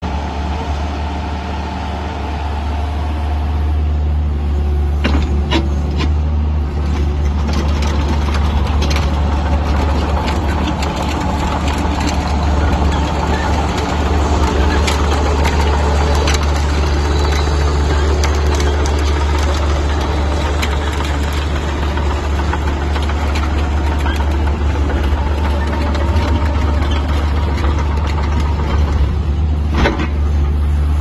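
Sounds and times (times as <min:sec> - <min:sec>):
excavator engine running: 0:00.0 - 0:31.0
metal knocks and clanks: 0:06.9 - 0:30.5.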